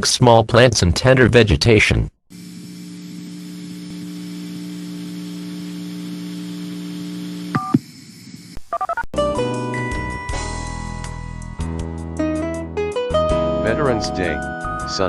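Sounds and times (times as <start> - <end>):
electrical hum with hiss: 2.3 - 9.0.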